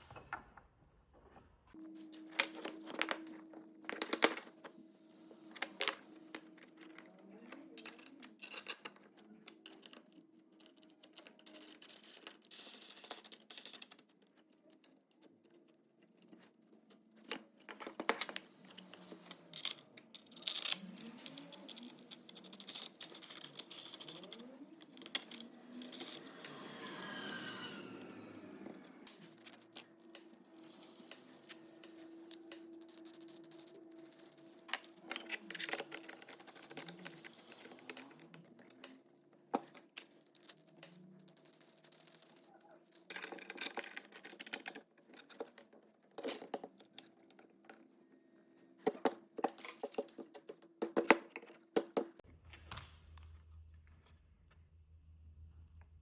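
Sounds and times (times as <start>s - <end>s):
small tools clicking and tapping: 2.1s - 4.8s, 5.4s - 26.6s, 28.7s - 47.9s, 48.8s - 52.2s
short scrape: 26.2s - 28.6s.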